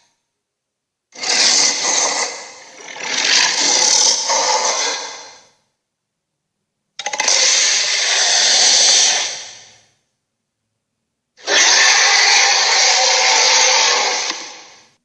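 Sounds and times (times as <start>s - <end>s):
gorilla call: 1.2s - 5.4s, 11.4s - 14.8s.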